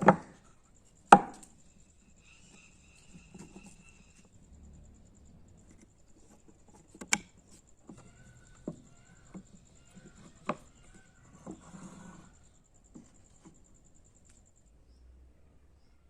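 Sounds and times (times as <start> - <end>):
tools knocking on wood: 7.9 - 11.7.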